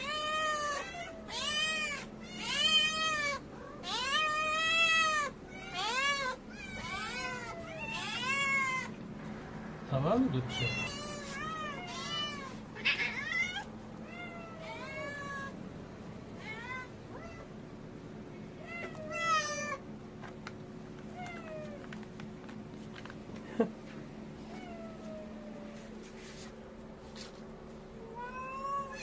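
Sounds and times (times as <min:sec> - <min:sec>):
cats meowing: 0:00.0 - 0:09.1, 0:10.4 - 0:15.6, 0:16.3 - 0:17.6, 0:18.6 - 0:19.9, 0:21.0 - 0:22.1, 0:24.4 - 0:25.9, 0:28.0 - 0:29.0.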